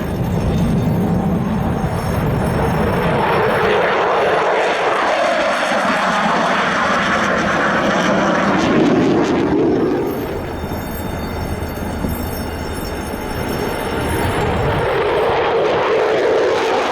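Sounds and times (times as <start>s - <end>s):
jet engine roar: 0.0s - 16.9s.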